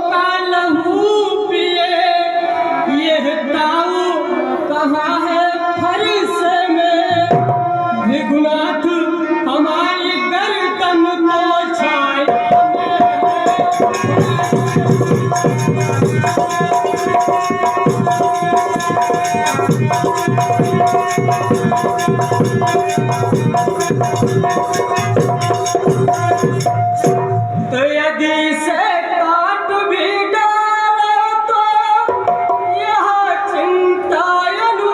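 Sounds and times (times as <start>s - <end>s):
hand drums playing a busy rhythm: 7.1s - 8.1s, 12.2s - 27.8s, 32.0s - 33.0s
held melodic tone: 12.7s - 27.7s.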